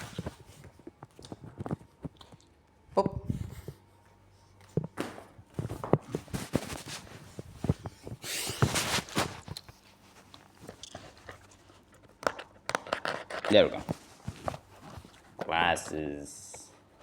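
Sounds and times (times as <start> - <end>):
packaging crinkling: 7.7 - 9.8.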